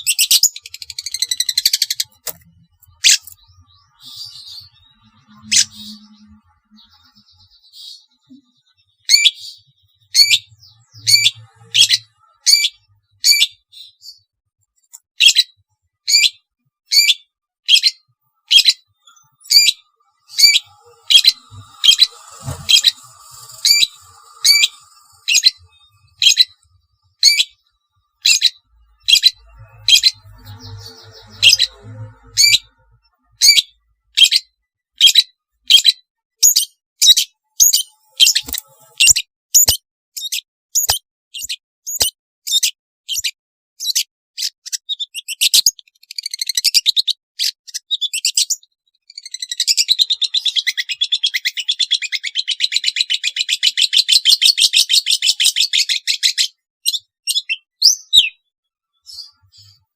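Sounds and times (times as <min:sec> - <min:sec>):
bird giving harsh calls: 0:04.0 - 0:06.2, 0:19.4 - 0:27.6.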